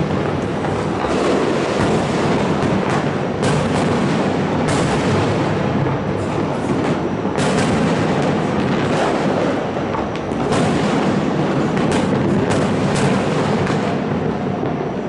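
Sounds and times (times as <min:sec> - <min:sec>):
fireworks bursting and crackling: 0:00.0 - 0:15.0
sharp firework bangs: 0:00.0 - 0:15.0.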